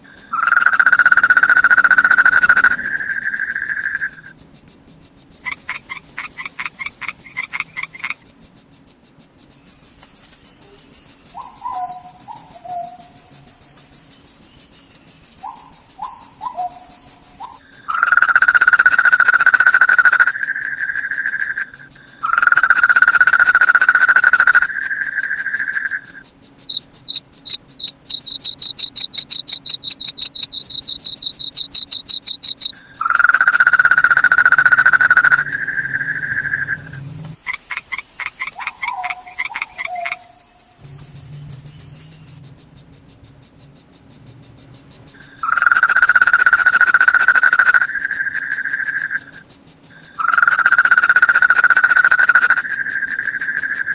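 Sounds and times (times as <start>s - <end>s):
crickets trilling: 0.0s - 53.9s
fast pulsed insect calls: 0.0s - 53.9s
rapid insect ticking pulses: 0.0s - 53.9s
low buzzing insect trill: 15.0s - 38.6s, 40.1s - 53.9s.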